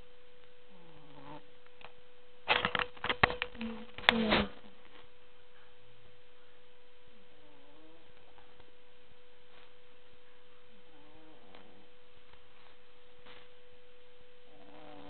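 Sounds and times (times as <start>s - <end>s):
faint steady hum: 0.0s - 15.0s
dog snoring: 0.7s - 1.5s, 7.3s - 8.6s, 10.9s - 11.9s, 14.4s - 15.0s.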